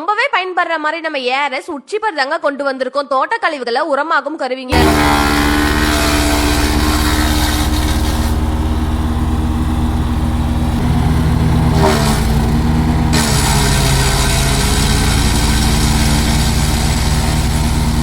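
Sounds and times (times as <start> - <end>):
wood chipper engine running: 4.8 - 18.0.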